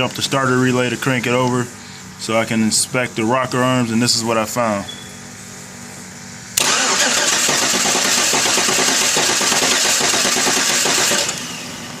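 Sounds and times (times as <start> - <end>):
car engine running: 5.2 - 12.0
starter motor cranking: 6.6 - 11.6.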